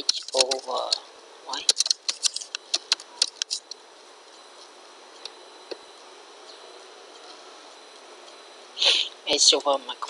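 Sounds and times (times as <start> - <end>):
keyboard key clicks: 1.6 - 3.7.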